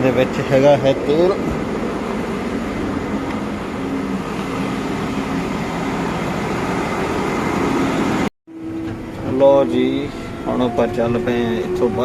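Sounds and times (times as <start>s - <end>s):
steady hum: 0.0s - 8.3s
tractor engine running: 0.0s - 11.1s.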